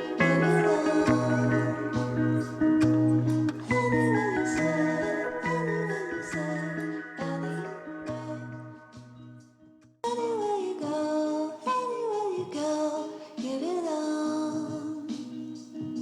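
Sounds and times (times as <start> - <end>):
woman singing a song: 0.0 - 9.0, 10.0 - 16.0.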